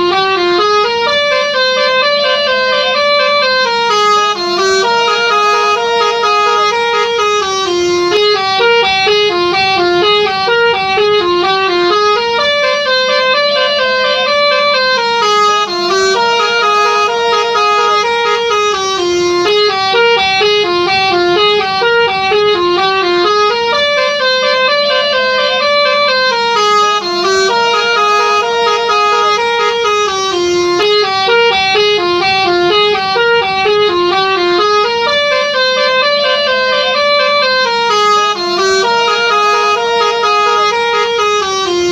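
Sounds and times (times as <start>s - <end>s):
bus air horns playing a tune: 0.0s - 41.9s.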